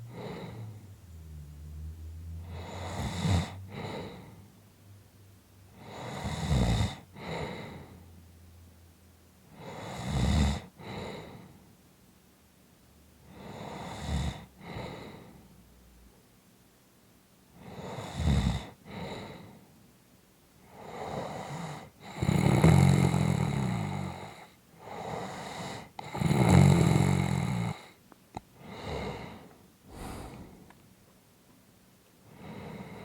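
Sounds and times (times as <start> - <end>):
person snoring: 0.1 - 0.9, 1.8 - 4.4, 5.8 - 7.9, 28.7 - 30.7.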